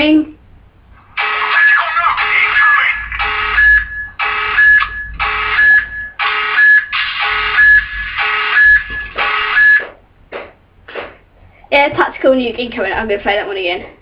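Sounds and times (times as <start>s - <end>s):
pulsing electronic alarm: 1.2s - 9.9s.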